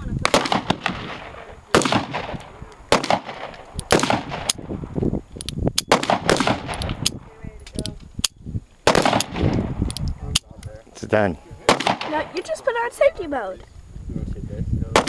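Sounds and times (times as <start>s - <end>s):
distant gunfire cracks: 0.2s - 4.7s, 5.8s - 7.3s, 8.9s - 9.7s, 11.7s - 12.7s.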